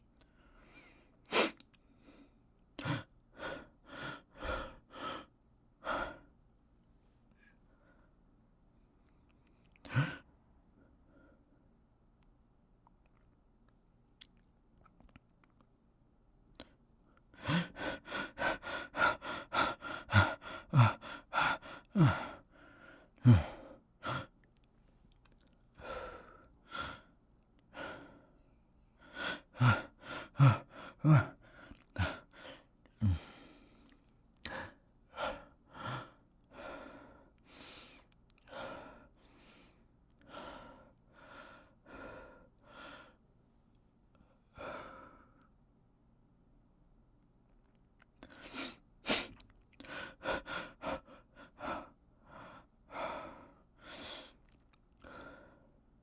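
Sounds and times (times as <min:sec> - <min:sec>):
person breathing hard and gasping: 0:00.4 - 0:06.3, 0:17.3 - 0:24.3, 0:25.8 - 0:28.4, 0:29.0 - 0:43.2.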